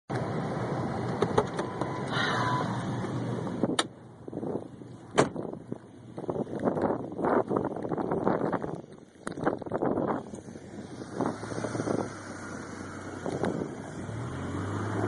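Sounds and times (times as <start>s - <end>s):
vehicle driving in snow: 5.7s - 15.0s.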